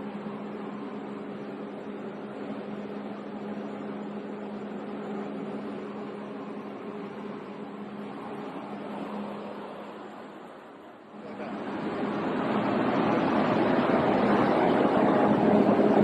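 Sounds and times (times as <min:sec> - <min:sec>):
cooling fan air rush: 0:00.0 - 0:16.0.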